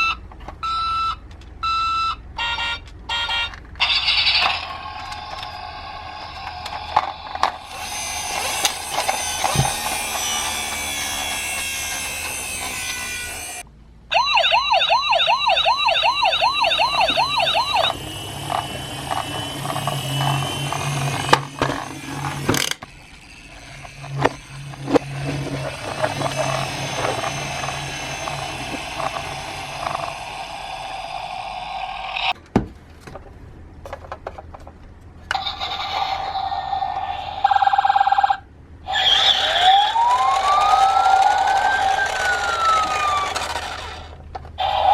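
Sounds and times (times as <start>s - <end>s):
steady two-tone siren: 7.6s - 22.5s, 23.5s - 32.3s, 39.4s - 43.6s
electronic siren warbling fast: 14.1s - 22.5s, 39.1s - 43.7s
plastic toy cars clicking: 39.0s - 44.9s.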